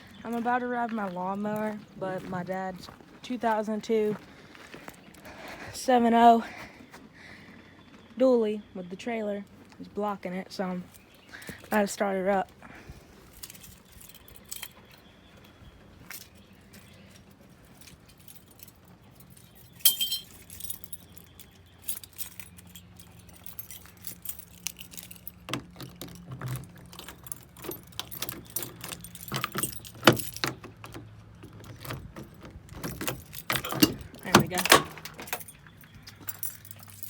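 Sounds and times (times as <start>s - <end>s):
faint low engine hum: 0.0s - 37.0s
keys jangling and clicking: 13.3s - 15.1s, 16.1s - 37.0s.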